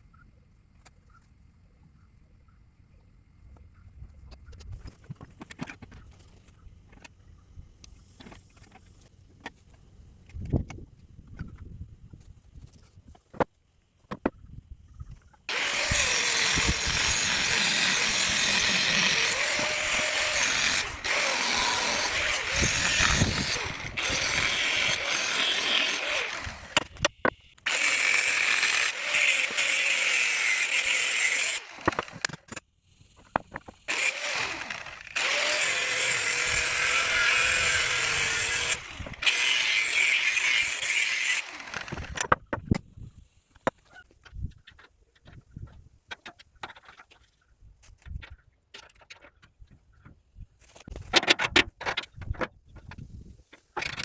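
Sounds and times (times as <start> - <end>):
handheld power tool running: 15.5 - 27.0, 27.6 - 32.3, 33.9 - 42.2.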